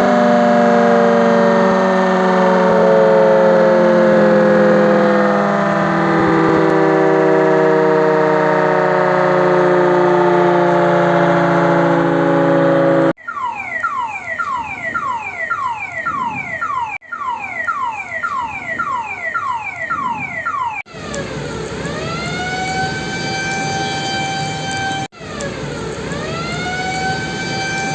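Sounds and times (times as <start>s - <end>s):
air raid siren wailing: 0.0s - 27.9s.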